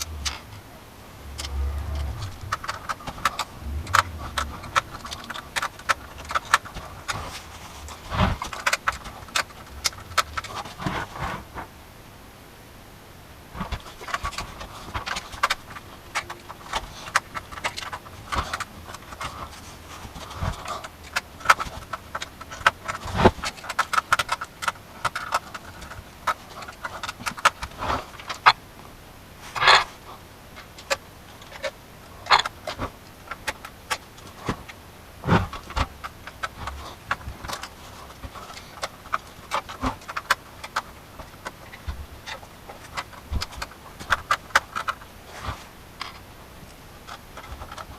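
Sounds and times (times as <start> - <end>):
loud rattle: 1.3 - 11.2
computer hardware clicks and jangles: 13.8 - 28.5.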